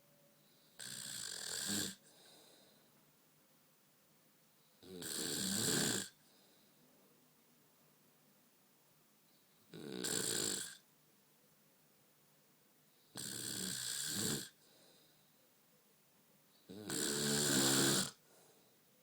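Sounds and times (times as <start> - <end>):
woman snoring: 0.8 - 2.0, 4.8 - 6.2, 9.7 - 10.8, 13.2 - 14.6, 16.7 - 18.2.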